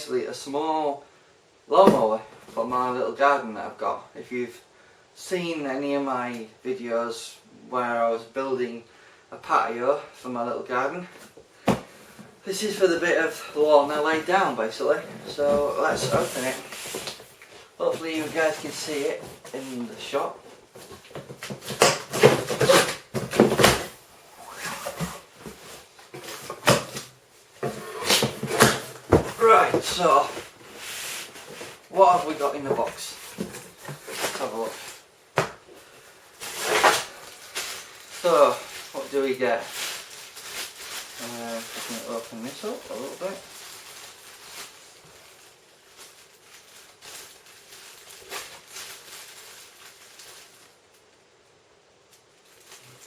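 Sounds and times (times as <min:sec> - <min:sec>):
cardboard scraping and rustling: 0:14.2 - 0:35.1, 0:36.4 - 0:45.3
packaging crinkles: 0:35.8 - 0:51.2, 0:52.1 - 0:53.0.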